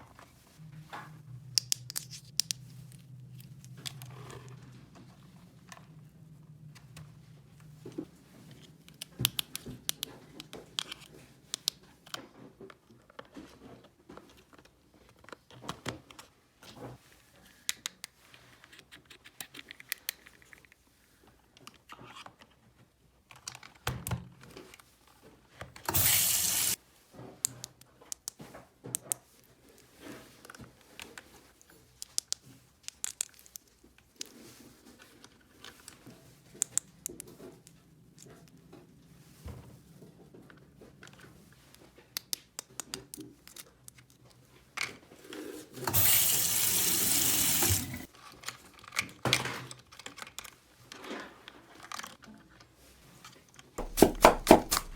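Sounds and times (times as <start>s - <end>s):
loud rushing hiss: 25.9s - 26.8s.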